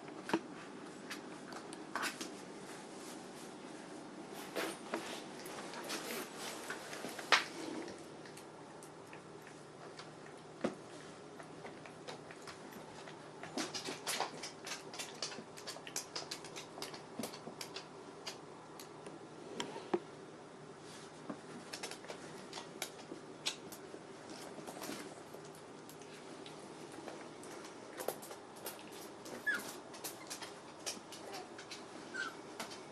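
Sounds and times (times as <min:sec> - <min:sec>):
faint steady hum: 0:00.0 - 0:32.9
puppies' claws clicking and tapping: 0:04.9 - 0:19.0, 0:21.3 - 0:32.9.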